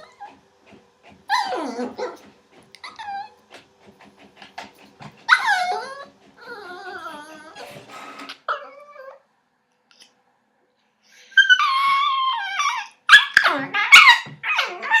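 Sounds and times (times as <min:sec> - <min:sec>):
puppy making pitched calls: 0:11.4 - 0:15.0.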